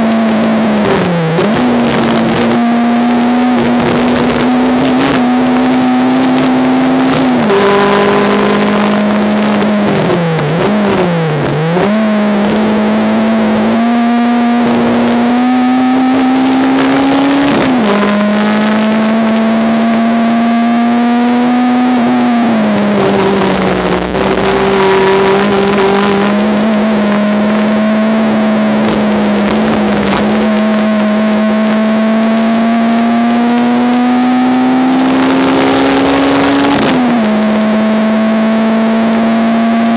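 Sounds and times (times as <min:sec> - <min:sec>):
race car engine at high revs: 0:00.0 - 0:39.9.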